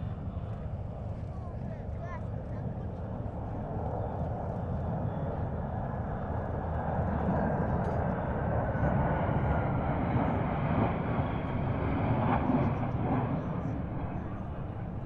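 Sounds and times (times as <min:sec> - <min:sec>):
military aircraft flying overhead: 0:00.0 - 0:15.0.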